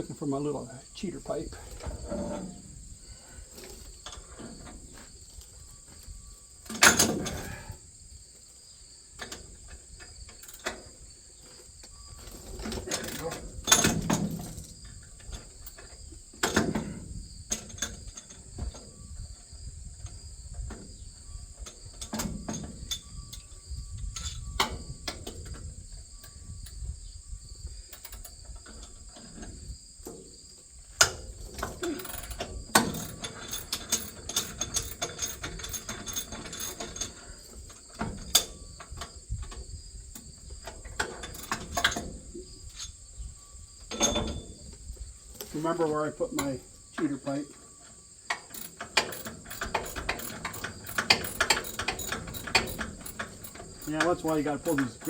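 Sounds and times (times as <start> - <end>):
crickets chirping: 0.0 - 55.0
metal tools clinking and clanking: 12.2 - 14.7, 43.9 - 44.6, 45.3 - 47.6, 48.3 - 55.0.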